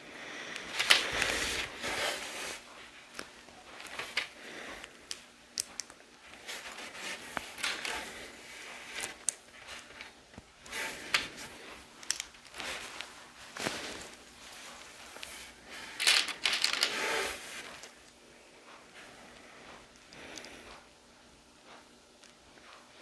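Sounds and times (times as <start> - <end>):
plastic bricks clicking together: 5.1 - 6.0, 12.0 - 12.6, 16.0 - 17.0.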